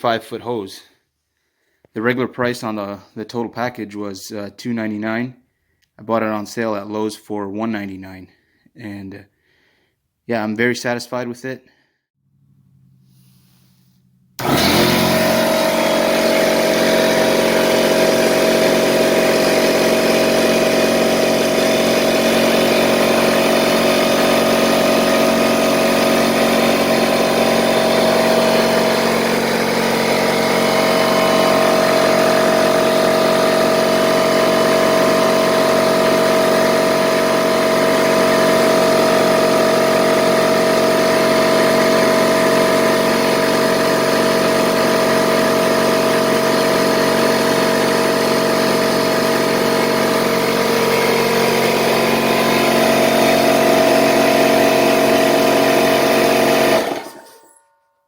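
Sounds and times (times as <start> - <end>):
air compressor running: 12.9 - 57.5.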